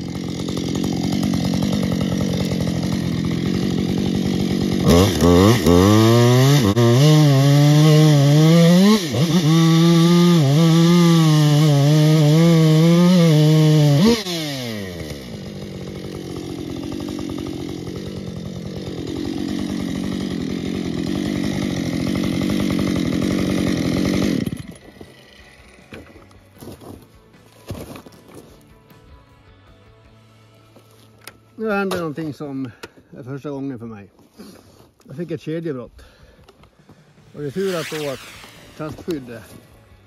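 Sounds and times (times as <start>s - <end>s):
chainsaw cutting wood: 0.0s - 27.0s, 36.0s - 40.0s.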